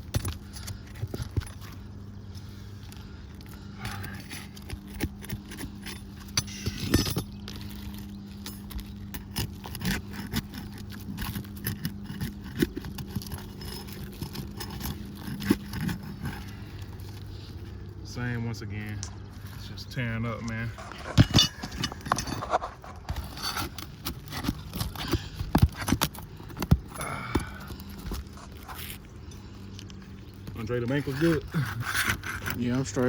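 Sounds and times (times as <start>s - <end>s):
shingles tearing: 2.5s - 17.8s, 20.6s - 33.0s
metal tool scraping shingles: 3.8s - 16.7s, 20.3s - 26.8s, 30.6s - 33.0s.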